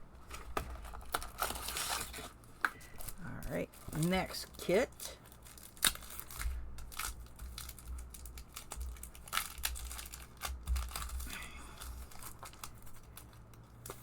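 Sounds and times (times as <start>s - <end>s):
packaging crinkling and rustling: 0.1s - 14.0s.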